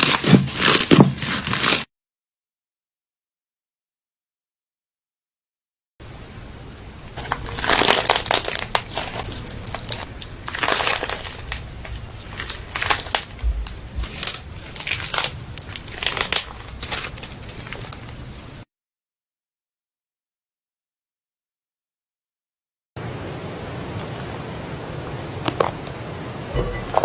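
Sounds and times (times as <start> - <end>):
crunchy slime crackling: 0.0 - 1.9, 7.2 - 18.4.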